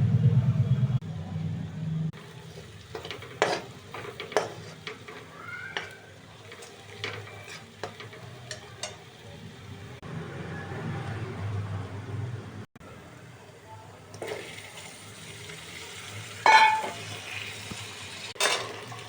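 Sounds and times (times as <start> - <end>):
utensil scraping a pan: 2.2 - 9.0, 16.5 - 17.2
food sizzling: 2.2 - 10.0, 14.2 - 19.0.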